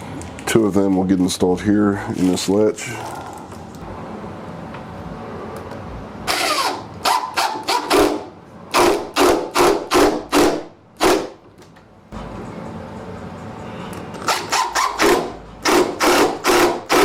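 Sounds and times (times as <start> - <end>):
power drill driving a screw: 6.3 - 8.1, 14.3 - 17.0.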